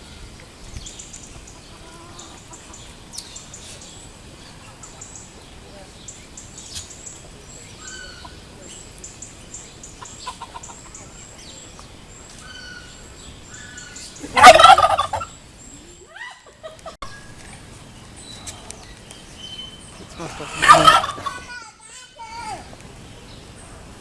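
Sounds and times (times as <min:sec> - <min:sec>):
turkey gobbling: 0:07.8 - 0:08.4, 0:10.0 - 0:11.1, 0:14.2 - 0:15.4, 0:20.0 - 0:21.5.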